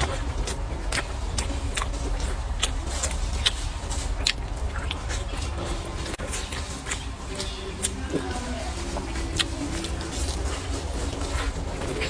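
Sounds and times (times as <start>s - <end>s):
person chewing food: 0.0s - 12.0s.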